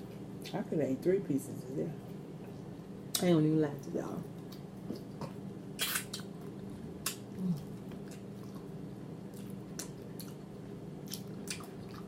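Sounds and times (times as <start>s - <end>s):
person chewing with wet smacks: 4.3s - 12.0s.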